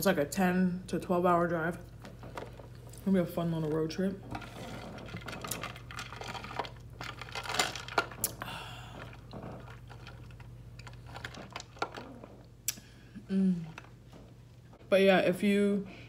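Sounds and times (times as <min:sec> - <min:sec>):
faint low hum: 0:00.0 - 0:16.0
chewing and crunching: 0:01.9 - 0:12.9.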